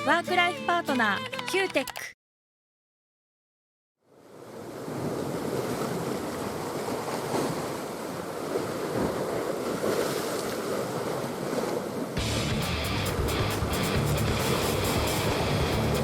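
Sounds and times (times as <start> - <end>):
sea surf: 4.1 - 16.0.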